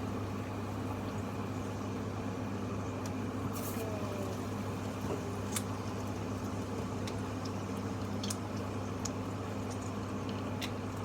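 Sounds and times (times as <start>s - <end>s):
steady low hum: 0.0s - 11.0s
small wet squishes and clicks: 5.1s - 11.0s.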